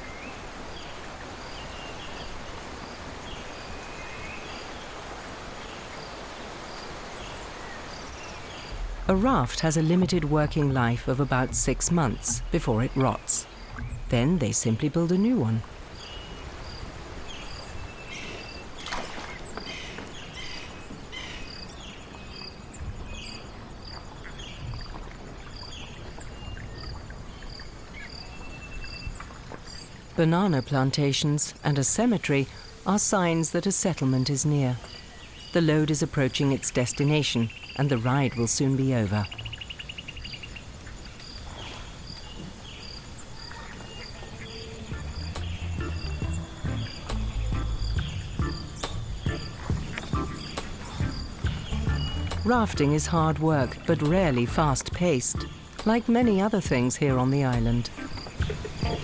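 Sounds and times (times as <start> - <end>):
low even rumble: 8.6 - 15.4
bird calls: 15.2 - 30.1, 36.9 - 59.0.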